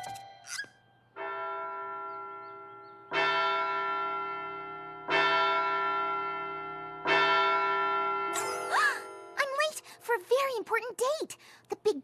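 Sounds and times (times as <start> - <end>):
large bell tolling: 1.1 - 9.6.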